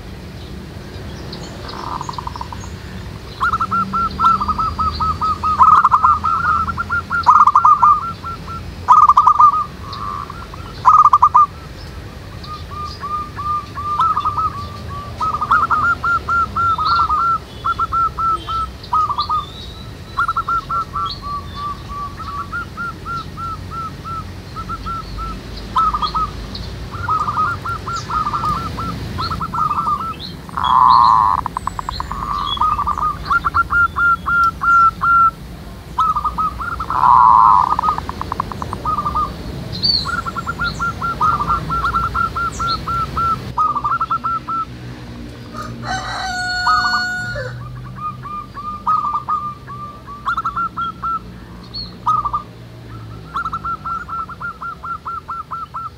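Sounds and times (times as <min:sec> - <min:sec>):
doves cooing: 0:01.4 - 0:55.9
fowl-like bird call: 0:27.0 - 0:35.4, 0:45.5 - 0:51.2.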